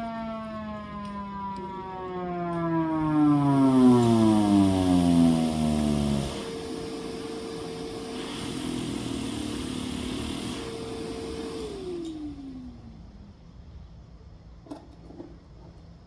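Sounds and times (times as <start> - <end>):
hand-crank siren winding down: 0.0 - 13.2
blower humming and hissing: 2.9 - 13.5.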